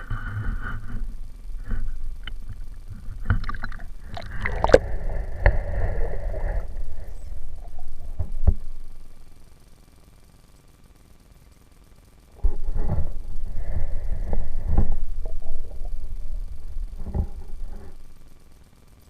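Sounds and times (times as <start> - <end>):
low rumble: 0.8 - 9.7, 12.4 - 18.4
water sloshing and splashing: 1.7 - 5.7.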